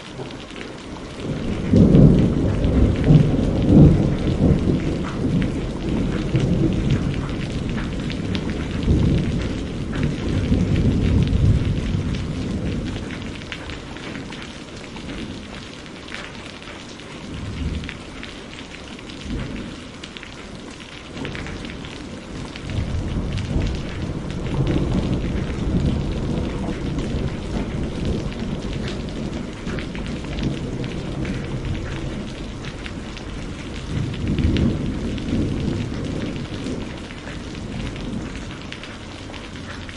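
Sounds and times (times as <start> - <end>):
heavy rain: 0.0 - 39.9
rolling thunder: 1.2 - 14.4, 21.2 - 39.9.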